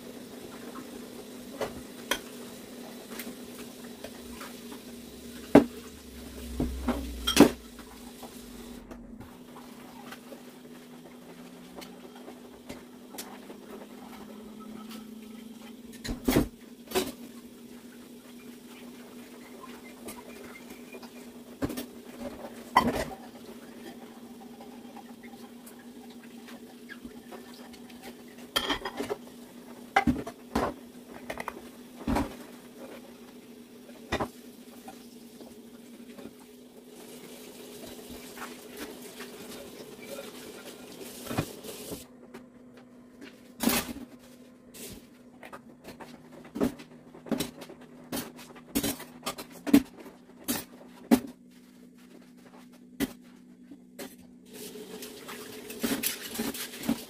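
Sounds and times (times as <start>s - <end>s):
low hum: 4.1s - 16.0s
dishes and pans clinking: 6.7s - 7.7s, 28.5s - 29.2s.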